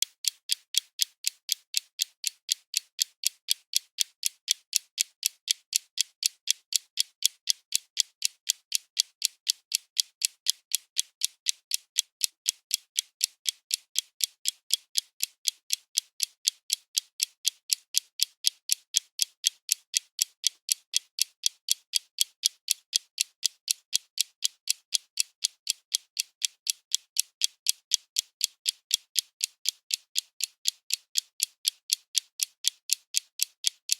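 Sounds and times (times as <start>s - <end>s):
clock ticking: 0.0s - 33.9s.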